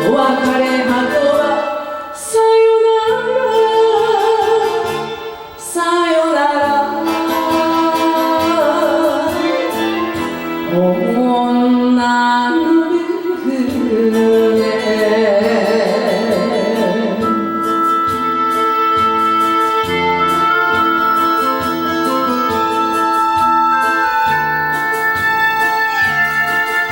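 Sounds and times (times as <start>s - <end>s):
person singing with vibrato: 0.0s - 26.9s
backing band playing: 6.7s - 26.9s.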